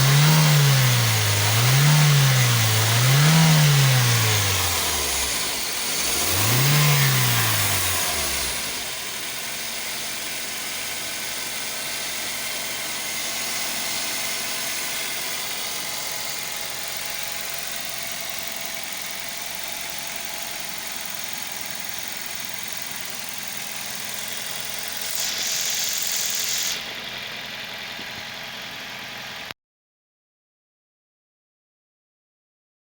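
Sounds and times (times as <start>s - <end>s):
car engine revving: 0.0s - 17.8s
car engine idling: 0.0s - 29.5s.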